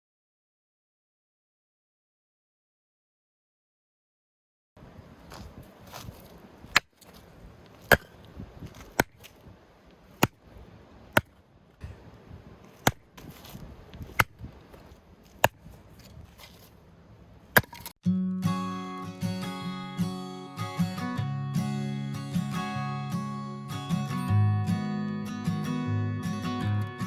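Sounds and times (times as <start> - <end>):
hatchet chopping firewood: 6.7 - 7.2, 7.8 - 8.2, 8.8 - 9.4, 10.2 - 10.4, 12.7 - 14.5, 15.3 - 15.7, 17.6 - 18.0.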